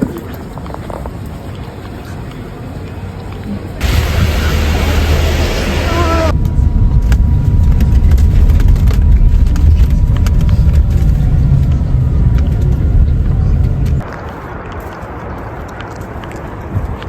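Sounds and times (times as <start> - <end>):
low rumble: 3.8 - 15.2.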